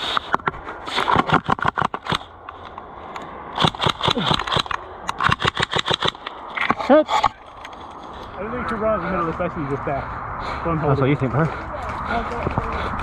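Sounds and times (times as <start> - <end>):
airsoft guns firing bursts: 3.6 - 6.2.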